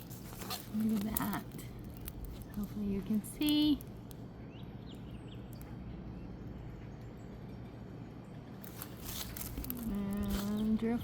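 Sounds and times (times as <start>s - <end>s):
steady hum and hiss: 0.0s - 11.0s
faint rustling: 8.6s - 10.8s.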